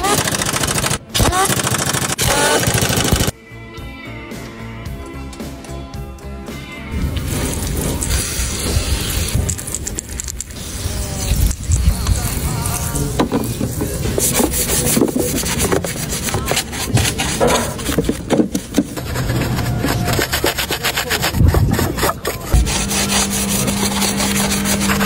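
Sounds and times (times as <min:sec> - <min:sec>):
tool scraping and rubbing: 0:12.7 - 0:25.0.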